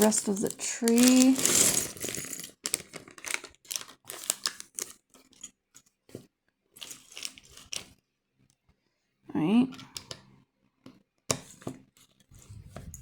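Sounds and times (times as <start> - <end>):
crinkly plastic bag being handled: 0.0 - 5.0
plastic pieces shifting: 0.0 - 5.0, 6.8 - 7.9.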